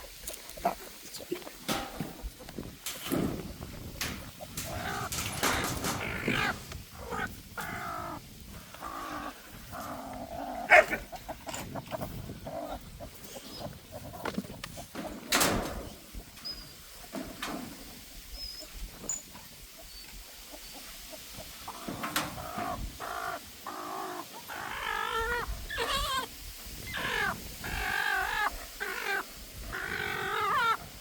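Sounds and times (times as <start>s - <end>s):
knocks and rustling: 1.4s - 7.4s, 13.7s - 18.1s, 21.7s - 23.0s
hen calling: 4.0s - 10.1s, 21.5s - 30.9s.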